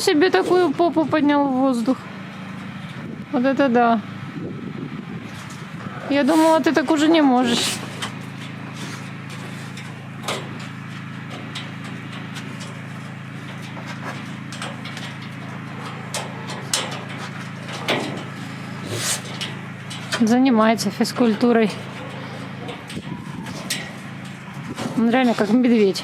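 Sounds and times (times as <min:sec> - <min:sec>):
generator engine humming: 0:00.0 - 0:26.0
raccoon scratching and knocking: 0:06.3 - 0:26.0.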